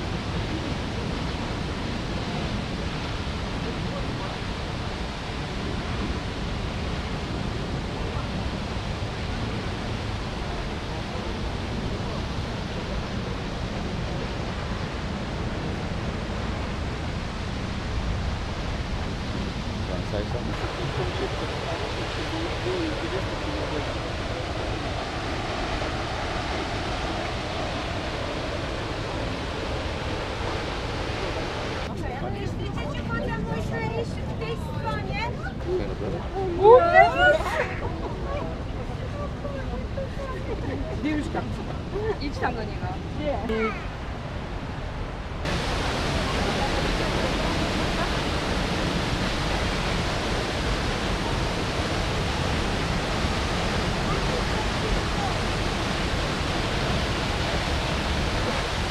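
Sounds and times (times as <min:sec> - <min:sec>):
waterfall rushing: 0:00.0 - 0:32.0, 0:42.7 - 0:58.9.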